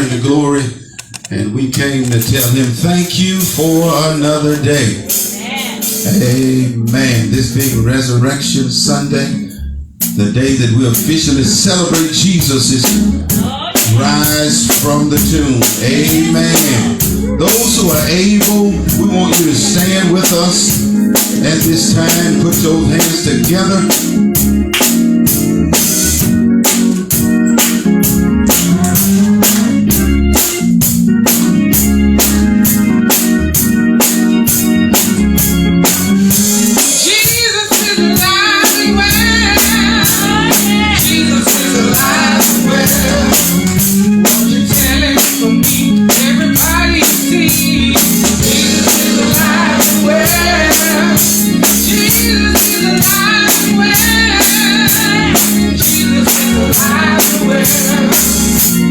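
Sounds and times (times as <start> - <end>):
church worship music: 0.0 - 58.9
drum kit beat: 0.9 - 58.9
people singing: 3.2 - 6.7, 10.4 - 23.9, 36.8 - 58.9.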